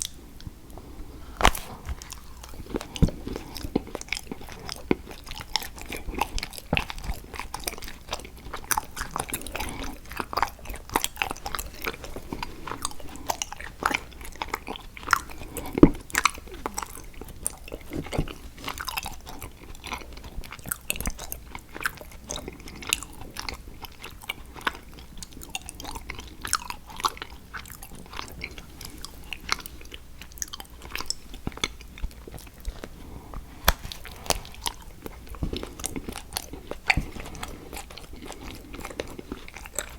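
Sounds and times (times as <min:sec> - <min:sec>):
chocolate crunching: 0:00.8 - 0:39.9
wet chewing clicks: 0:02.0 - 0:33.0, 0:33.7 - 0:39.9
chocolate snapping: 0:33.6 - 0:37.4.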